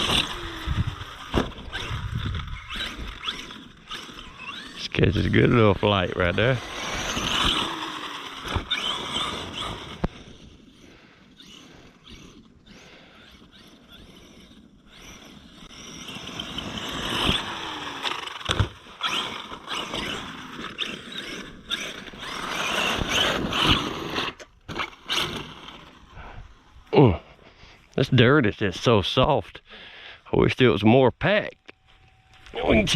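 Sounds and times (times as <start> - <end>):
electric motor whining: 0.0 - 27.4
tyres churning soft dirt: 0.0 - 31.5.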